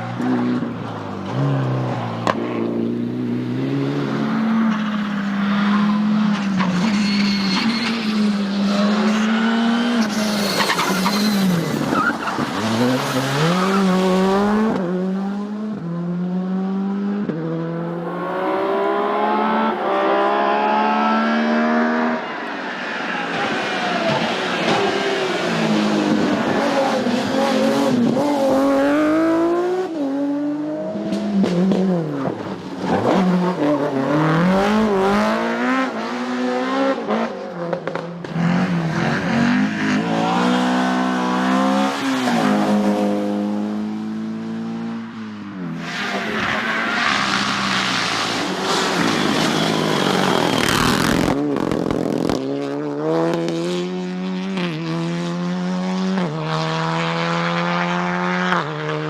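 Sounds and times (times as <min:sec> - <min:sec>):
rally car engines revving: 0:00.0 - 0:59.0
loud rushing noise: 0:21.5 - 0:28.3.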